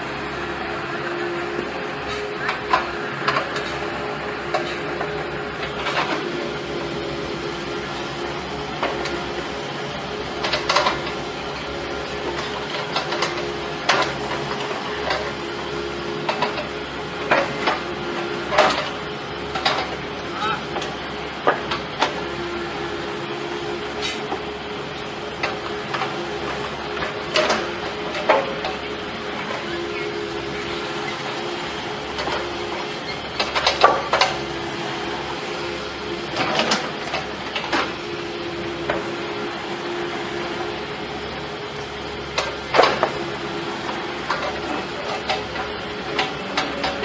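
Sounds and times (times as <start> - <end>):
sharp knocks and clanks: 18.4 - 20.0.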